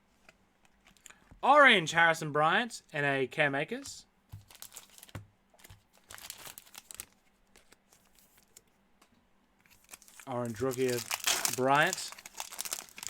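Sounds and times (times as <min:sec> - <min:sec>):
trading cards rustling and clicking: 0:09.6 - 0:13.0.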